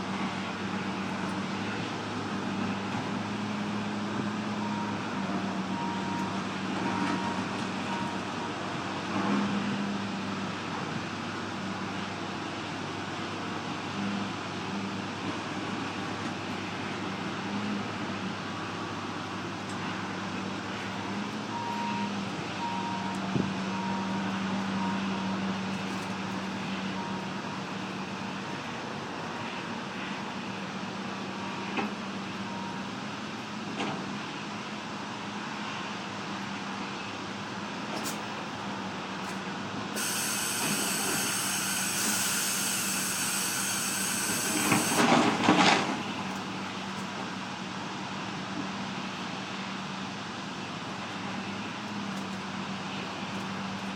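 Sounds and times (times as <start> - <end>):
heavy machinery running: 39.7 - 46.8
loud hiss: 40.0 - 45.1.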